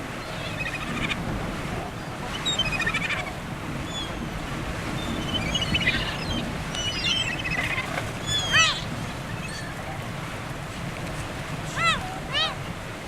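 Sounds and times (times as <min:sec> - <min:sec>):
gulls calling: 0:00.0 - 0:10.6, 0:11.3 - 0:13.0
surf: 0:00.0 - 0:13.0
wind: 0:00.0 - 0:13.0.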